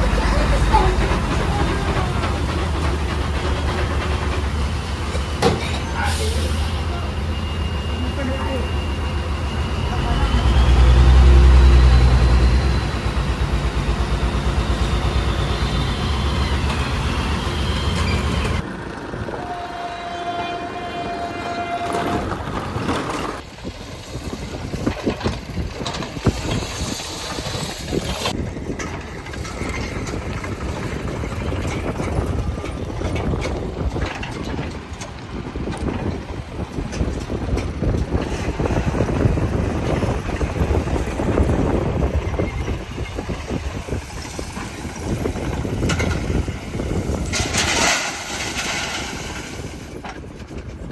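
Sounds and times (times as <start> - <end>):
heavy diesel engines running: 0.0 - 50.9
horn-like tone: 19.3 - 22.7.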